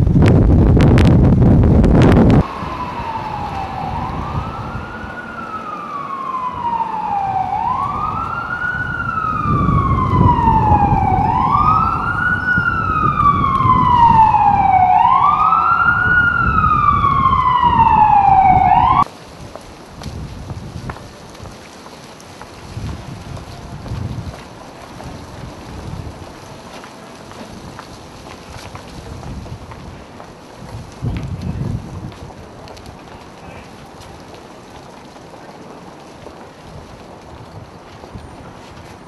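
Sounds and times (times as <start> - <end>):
wind rumbling on microphone: 0.0 - 39.0
emergency siren wailing: 2.0 - 19.1.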